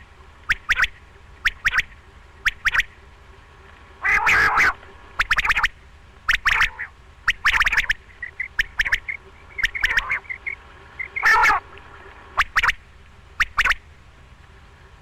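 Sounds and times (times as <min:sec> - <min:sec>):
quail calling: 0:00.5 - 0:02.9, 0:04.0 - 0:11.7, 0:12.4 - 0:12.8, 0:13.4 - 0:13.8.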